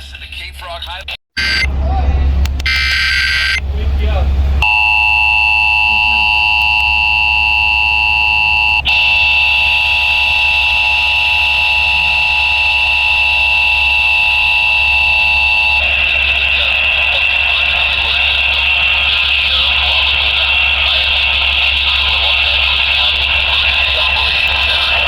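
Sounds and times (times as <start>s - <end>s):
radio static hiss: 0.8s - 1.7s, 2.7s - 3.6s, 4.6s - 25.0s
two-tone emergency alert alarm: 1.4s - 1.7s, 2.6s - 3.6s, 4.6s - 25.0s
click: 2.4s - 3.5s.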